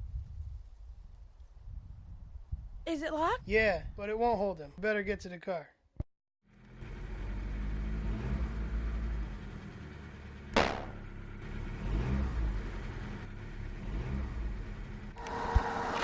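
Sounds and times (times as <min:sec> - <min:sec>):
car engine revving: 0:06.5 - 0:16.0
sharp knock: 0:10.6 - 0:11.1.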